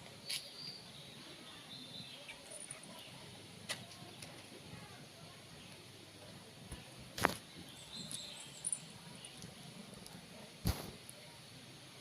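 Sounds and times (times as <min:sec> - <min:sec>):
small bird chirping: 0:07.5 - 0:09.7.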